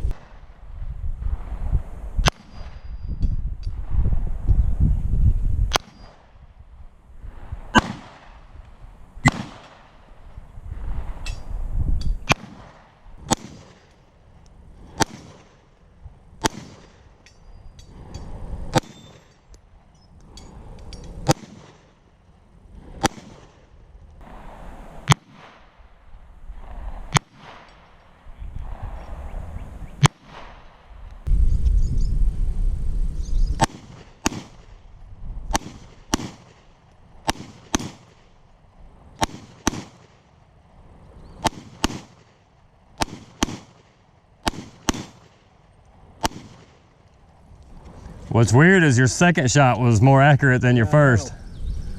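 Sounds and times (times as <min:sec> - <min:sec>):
pistol shots: 0:07.8 - 0:08.4, 0:09.2 - 0:10.0, 0:12.2 - 0:13.9, 0:15.0 - 0:15.6, 0:16.4 - 0:17.1, 0:18.7 - 0:19.3, 0:21.2 - 0:22.0, 0:23.0 - 0:23.6, 0:33.6 - 0:34.7, 0:35.5 - 0:38.3, 0:39.2 - 0:40.2, 0:41.4 - 0:42.4, 0:43.0 - 0:45.5, 0:46.2 - 0:46.8
low rumbling noise: 0:23.9 - 0:36.1.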